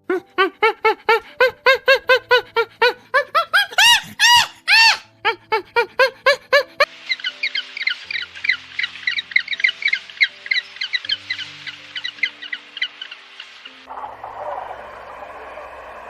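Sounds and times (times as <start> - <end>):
animal high-pitched calls: 3.4 - 5.1, 6.0 - 13.2
bird twittering: 6.9 - 13.9.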